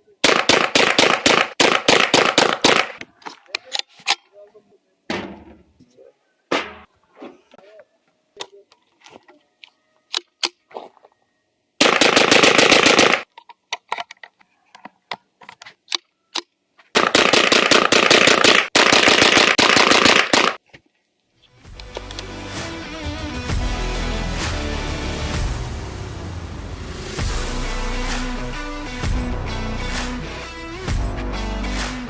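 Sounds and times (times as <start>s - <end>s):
rifle firing rapid shots: 0.2s - 3.0s, 11.8s - 13.2s, 17.0s - 20.6s.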